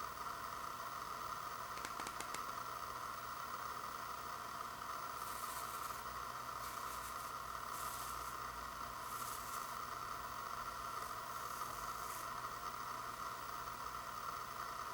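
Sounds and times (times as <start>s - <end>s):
steady hiss: 0.0s - 14.9s
light plastic clicks: 1.8s - 2.5s.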